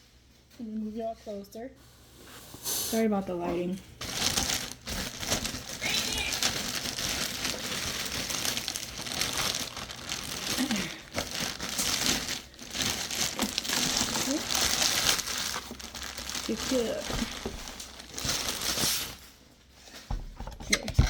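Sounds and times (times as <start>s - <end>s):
plastic packaging crinkling: 4.0s - 20.0s.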